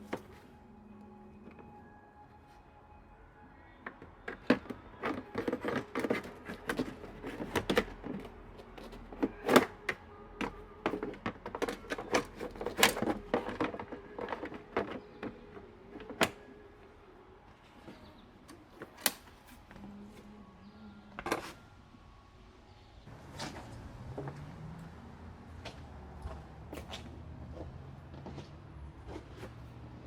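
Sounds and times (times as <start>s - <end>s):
pump parts clicking and rattling: 3.8s - 16.6s.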